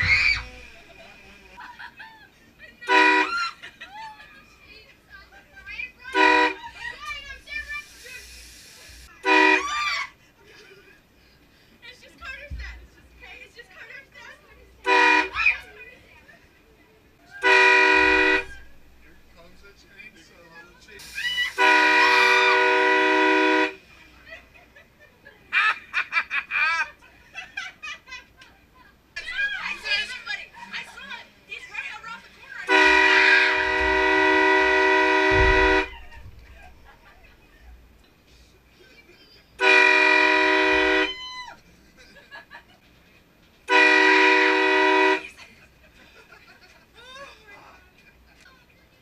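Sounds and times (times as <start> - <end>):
people crying out: 0.0 - 1.0, 2.9 - 4.6, 9.4 - 10.2, 21.0 - 22.4, 41.0 - 41.7
train air horn chord: 17.4 - 18.5, 21.0 - 23.8, 32.7 - 35.9, 39.6 - 41.1, 43.7 - 45.2.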